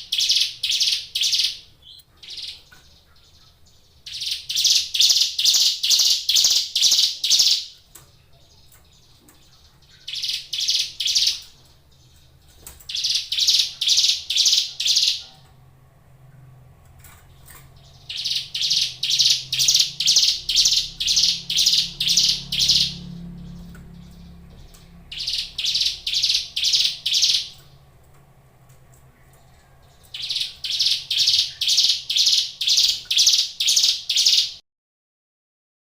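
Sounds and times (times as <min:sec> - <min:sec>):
bird calling in sharp notes: 0:00.0 - 0:07.8, 0:09.9 - 0:11.6, 0:12.9 - 0:15.5, 0:17.8 - 0:27.8, 0:29.1 - 0:34.6.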